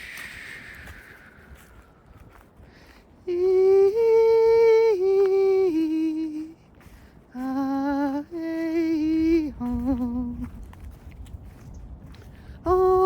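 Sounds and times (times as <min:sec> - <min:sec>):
person humming sustained notes: 0:03.3 - 0:06.6.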